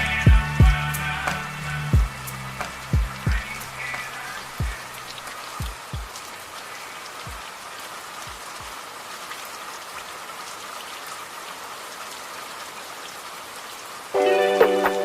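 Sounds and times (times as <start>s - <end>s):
steady rain falling: 0.0s - 15.0s
soft low thumps: 0.3s - 0.8s, 2.0s - 2.2s, 3.0s - 3.5s, 4.6s - 4.8s.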